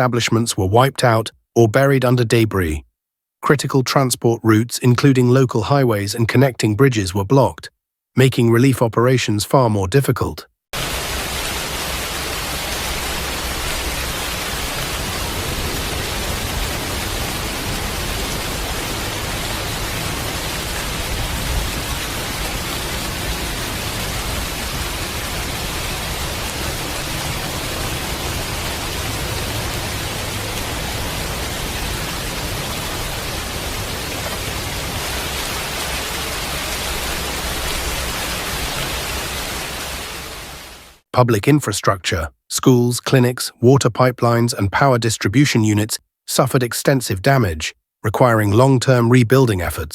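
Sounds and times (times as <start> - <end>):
water rushing: 10.8 - 41.0.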